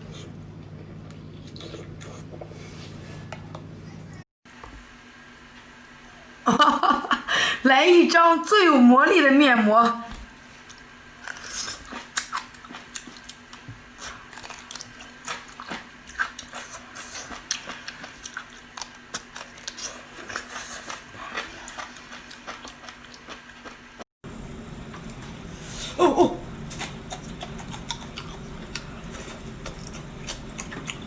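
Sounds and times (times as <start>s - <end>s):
faint steady hum: 0.0s - 31.0s
wet chewing and mouth smacks: 10.6s - 23.8s, 26.7s - 31.0s.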